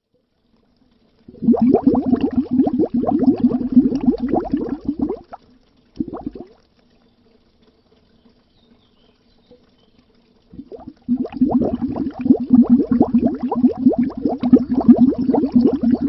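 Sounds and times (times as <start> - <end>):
underwater bubbles gurgling: 1.2 - 7.0, 10.2 - 16.0.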